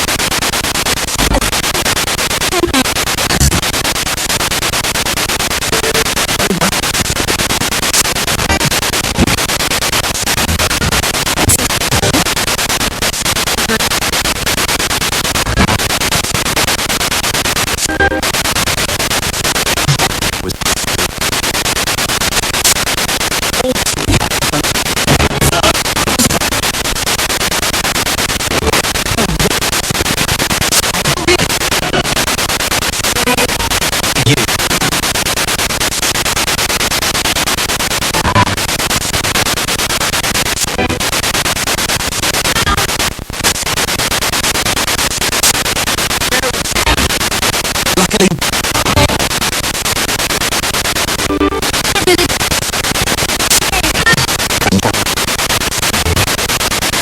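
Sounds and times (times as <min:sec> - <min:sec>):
radio music snatches: 0:00.0 - 0:57.0
radio static hiss: 0:00.0 - 0:57.0
broadcast voices: 0:10.4 - 0:12.4, 0:23.6 - 0:26.5, 0:47.8 - 0:49.3.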